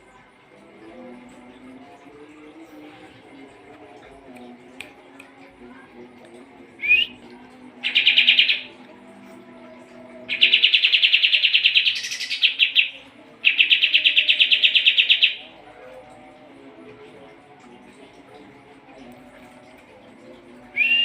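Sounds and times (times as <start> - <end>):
bird singing rapid trills: 7.8 - 8.8, 10.3 - 15.5.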